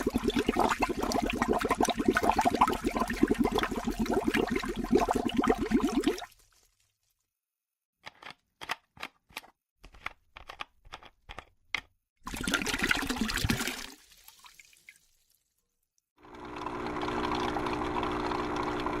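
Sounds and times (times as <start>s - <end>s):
water pouring: 0.0s - 7.3s, 12.2s - 15.8s.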